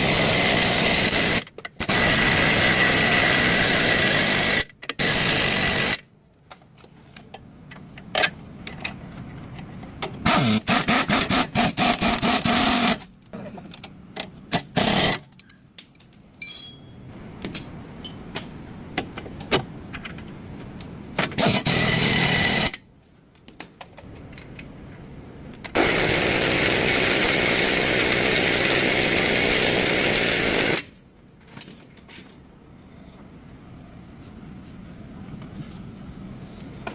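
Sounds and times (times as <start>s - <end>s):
metal clinks and clicks: 15.2s - 18.2s
power tool bursts: 21.4s - 22.8s, 25.8s - 30.8s.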